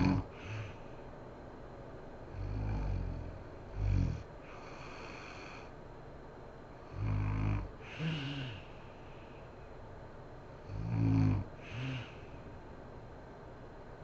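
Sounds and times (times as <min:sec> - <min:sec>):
woman snoring: 0:00.0 - 0:00.8, 0:02.3 - 0:05.7, 0:06.9 - 0:08.8, 0:10.7 - 0:12.4.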